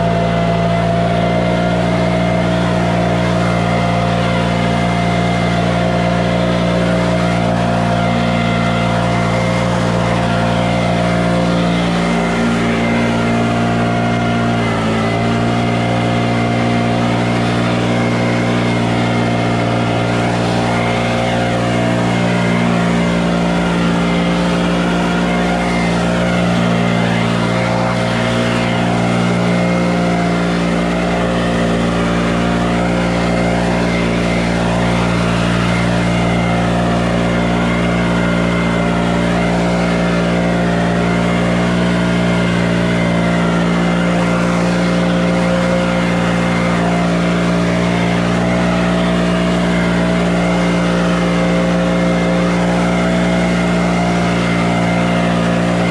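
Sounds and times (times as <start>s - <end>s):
engine running steadily: 0.0s - 55.9s.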